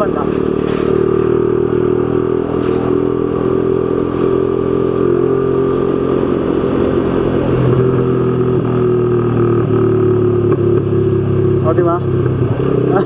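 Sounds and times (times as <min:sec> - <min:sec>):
motorcycle engine running: 0:00.0 - 0:13.0
exhaust backfire pops: 0:00.2 - 0:01.4, 0:02.4 - 0:03.5.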